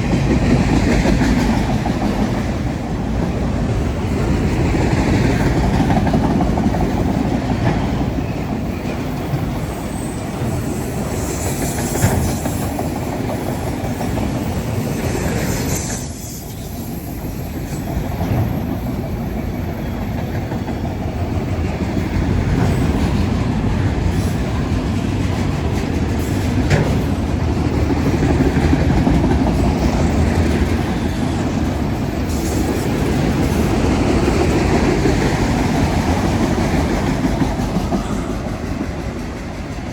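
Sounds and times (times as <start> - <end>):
freight train rumbling past: 0.0 - 39.9
wheels clacking over rail joints: 17.2 - 39.9.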